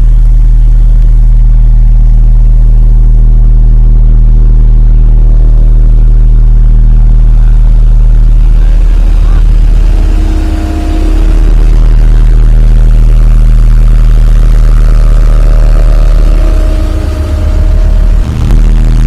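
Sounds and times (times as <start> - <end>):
diesel roller engine humming: 7.0 - 19.0.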